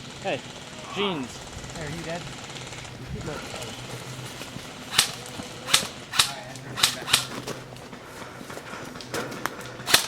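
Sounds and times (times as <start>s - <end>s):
airsoft guns firing: 4.9s - 7.6s, 9.8s - 10.0s.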